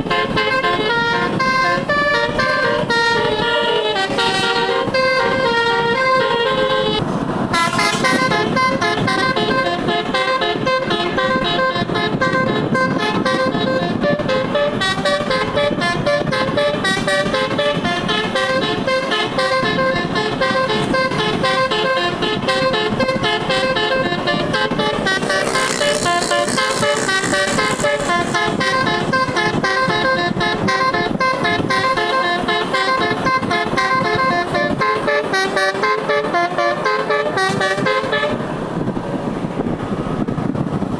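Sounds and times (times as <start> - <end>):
multi-tone musical bus horn: 0.0 - 40.9.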